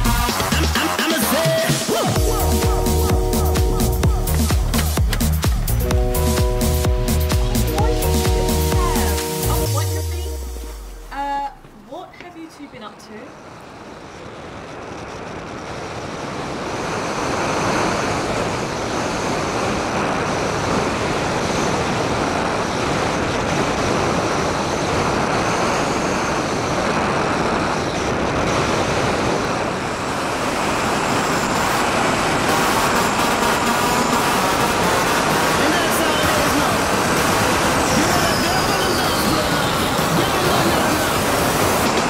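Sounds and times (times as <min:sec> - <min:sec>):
high motor whine: 0:00.0 - 0:11.9, 0:13.3 - 0:42.0
wind rush: 0:13.4 - 0:42.0.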